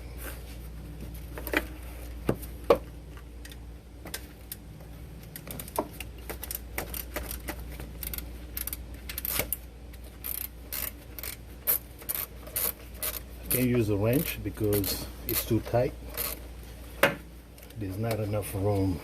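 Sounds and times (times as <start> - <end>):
hand ratchet clicking: 5.4 - 9.6, 10.2 - 16.4.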